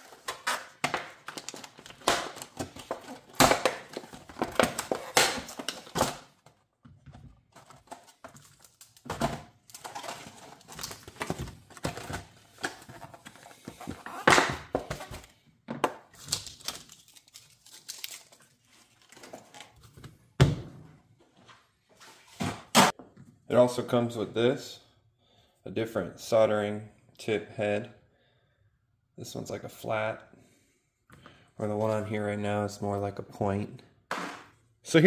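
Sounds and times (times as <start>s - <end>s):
packaging rustling and crinkling: 0.0s - 6.4s, 7.5s - 15.3s, 16.2s - 20.0s.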